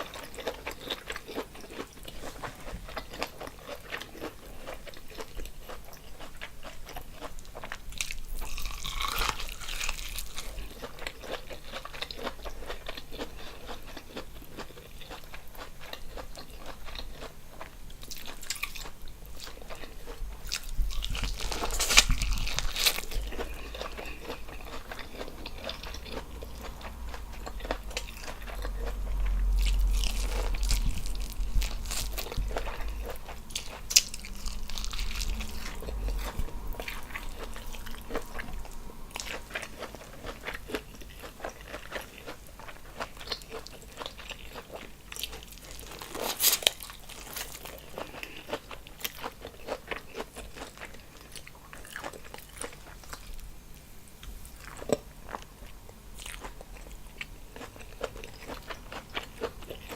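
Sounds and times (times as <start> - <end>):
close chewing and biting: 0.0 - 53.4, 54.2 - 59.9
low rumble: 20.2 - 40.8.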